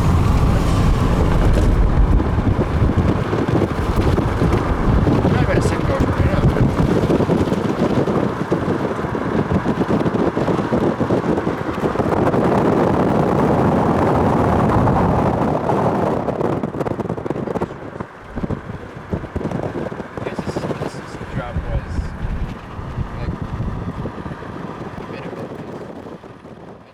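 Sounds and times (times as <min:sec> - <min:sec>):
wind buffeting microphone: 0:00.0 - 0:26.9.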